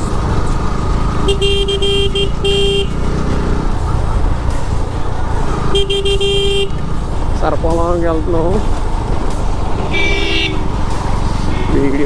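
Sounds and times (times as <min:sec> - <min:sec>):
motorcycle engine rumble: 0:00.0 - 0:12.0
road wind: 0:00.0 - 0:12.0
vehicle horn beeping: 0:01.2 - 0:04.5, 0:05.6 - 0:06.9, 0:09.7 - 0:10.8, 0:11.4 - 0:12.0.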